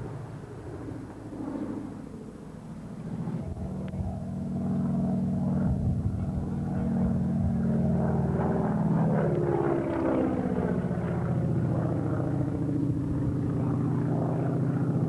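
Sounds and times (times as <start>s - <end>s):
propeller aircraft flying past: 0.0s - 15.0s.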